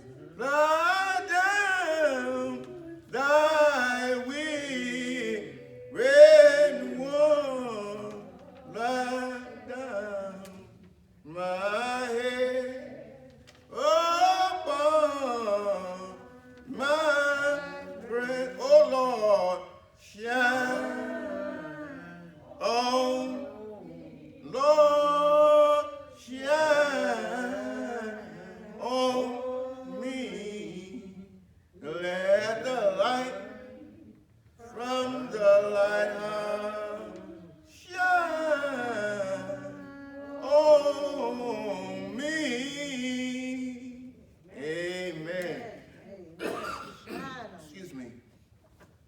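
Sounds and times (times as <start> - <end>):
person singing a hymn: 0.0 - 47.2.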